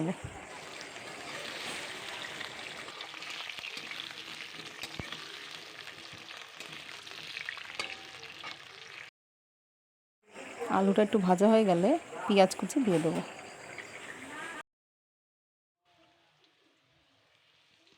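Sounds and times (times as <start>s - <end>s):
potatoes sizzling in hot oil: 0.0s - 9.1s, 16.2s - 17.9s.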